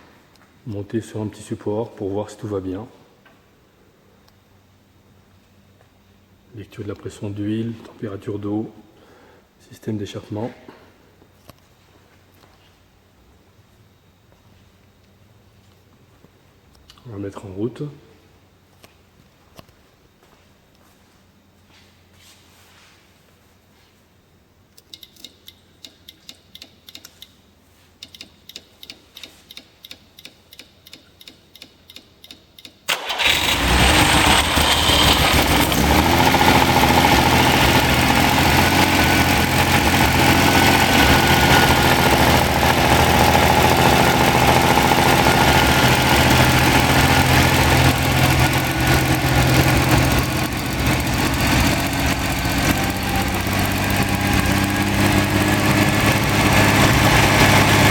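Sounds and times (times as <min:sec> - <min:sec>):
quick light ticks: 0:24.7 - 0:27.4, 0:28.0 - 0:32.9
engine running: 0:32.9 - 0:57.9.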